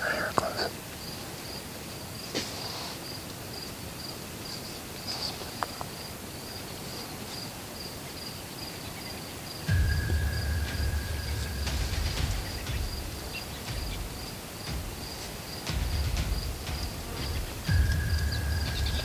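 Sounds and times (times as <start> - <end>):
insect chirping: 7.8 - 19.0
low rumble: 9.7 - 19.0
steady high tone: 9.7 - 19.0.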